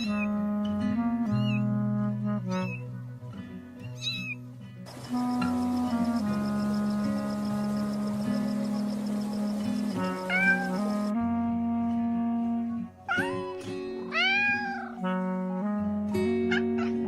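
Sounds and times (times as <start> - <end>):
background music: 0.0 - 17.0
kitten meowing: 10.2 - 10.9, 13.1 - 15.0.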